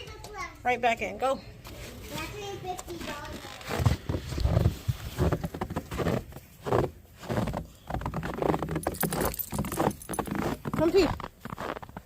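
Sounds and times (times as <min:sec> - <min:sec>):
footsteps crunching in snow: 0:03.0 - 0:12.0.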